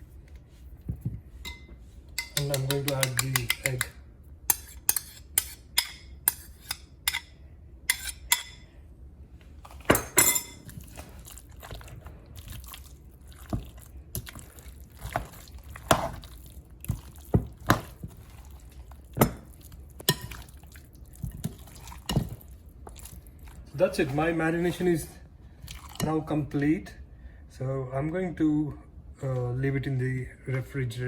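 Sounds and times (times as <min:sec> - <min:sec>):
wet marinade being mixed: 0:02.1 - 0:06.7, 0:09.6 - 0:26.7
utensil tapping against bowl: 0:02.2 - 0:07.2.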